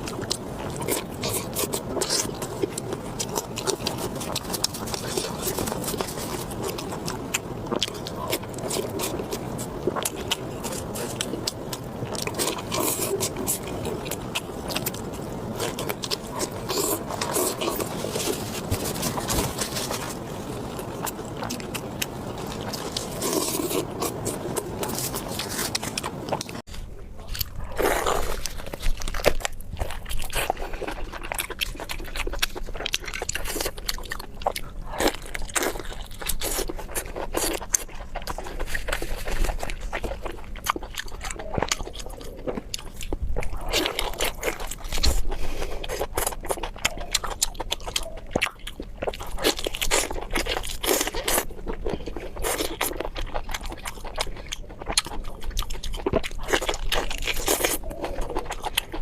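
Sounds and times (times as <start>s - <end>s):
wet chewing: 0.0s - 59.0s
crunching bites: 27.2s - 59.0s.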